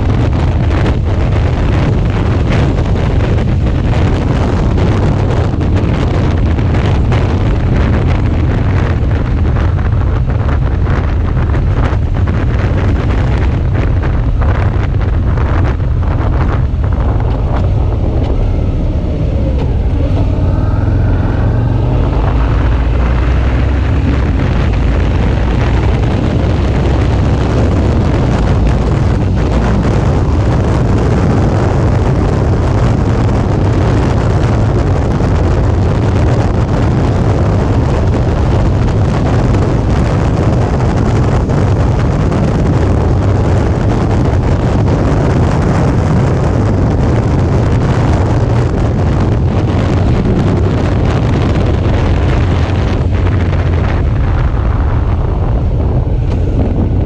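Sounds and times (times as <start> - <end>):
heavy wind rush on microphone: 0.0 - 57.0
motorcycle engine and tyres rumble: 0.0 - 57.0.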